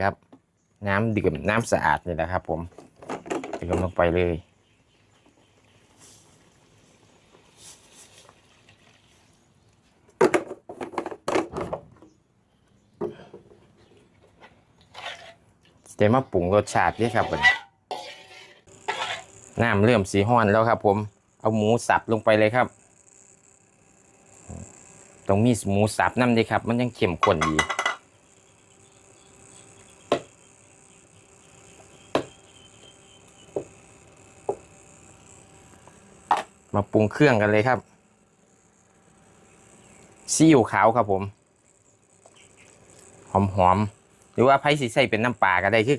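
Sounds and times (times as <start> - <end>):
spatula scraping wok: 14.8 - 15.4, 16.7 - 19.5.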